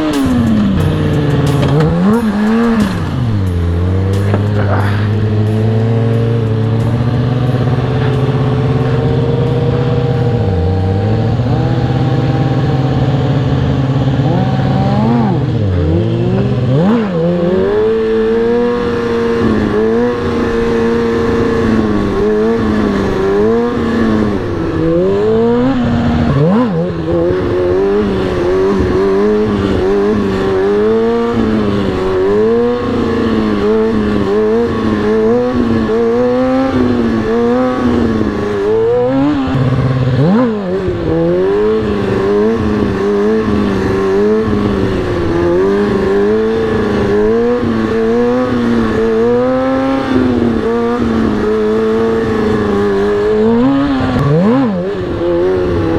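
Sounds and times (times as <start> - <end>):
motorcycle engine revving: 0.0 - 55.9.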